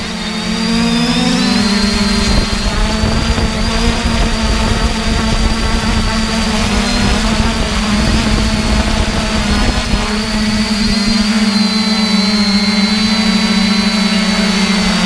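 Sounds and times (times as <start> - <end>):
drone propellers buzzing: 0.0 - 15.0.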